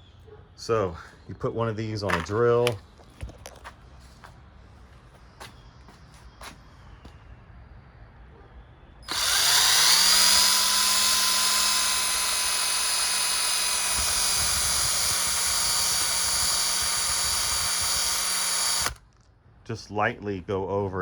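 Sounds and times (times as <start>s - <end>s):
electric drill buffing plastic: 9.1s - 19.0s.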